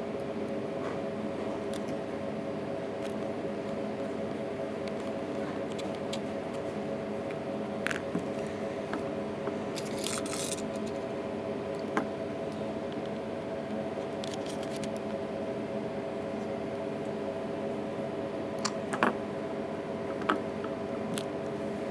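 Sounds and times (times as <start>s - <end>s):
steady electrical hum: 0.0s - 21.9s.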